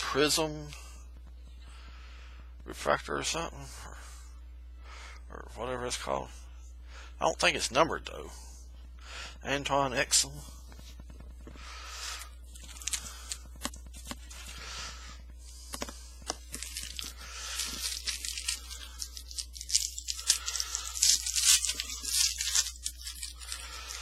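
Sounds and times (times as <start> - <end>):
foil wrapper tearing and crinkling: 12.5 - 14.6, 15.8 - 24.0.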